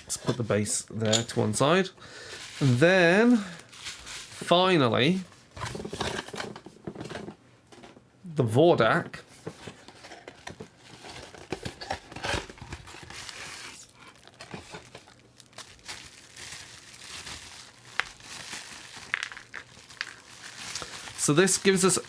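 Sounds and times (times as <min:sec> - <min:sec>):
plastic packaging crinkling: 0:02.2 - 0:06.5, 0:09.7 - 0:22.0.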